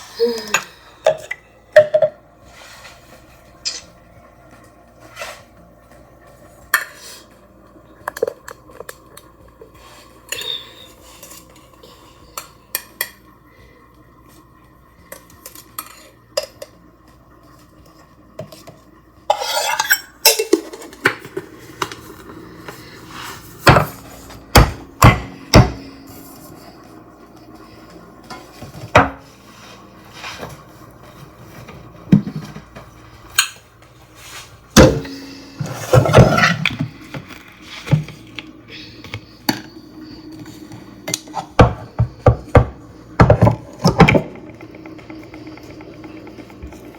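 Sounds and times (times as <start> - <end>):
dishes and utensils clinking: 19.3 - 21.3.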